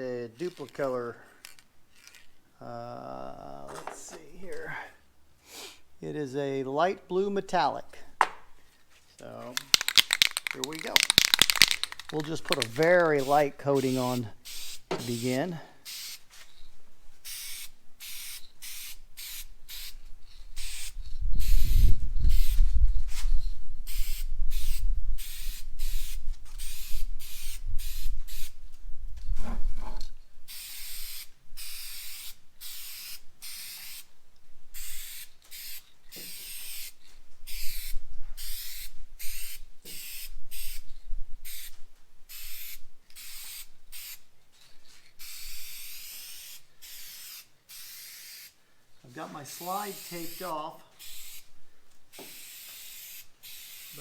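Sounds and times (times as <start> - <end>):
spray paint can hissing: 9.5 - 16.6, 17.2 - 28.6, 30.5 - 34.1, 34.7 - 44.3, 44.9 - 48.6, 49.4 - 51.5, 52.1 - 54.0.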